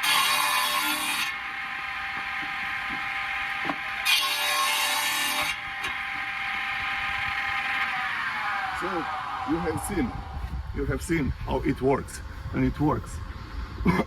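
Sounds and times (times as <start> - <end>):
saw blade cutting wood: 0.0 - 9.9
circular saw whining: 0.0 - 12.5.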